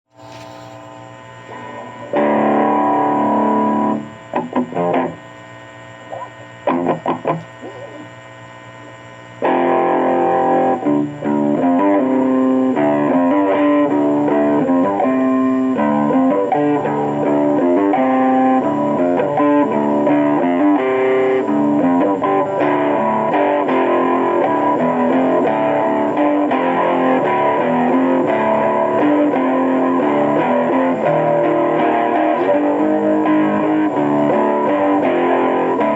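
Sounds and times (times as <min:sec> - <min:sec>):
electric guitar through amplifier: 0:00.1 - 0:35.9
low amplifier hum: 0:00.1 - 0:35.9.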